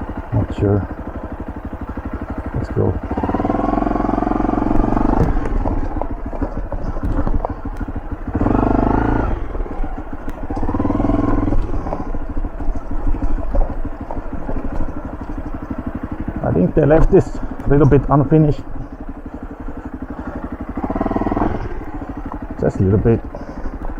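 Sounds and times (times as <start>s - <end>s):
motorbike engine revving: 0.0s - 23.9s.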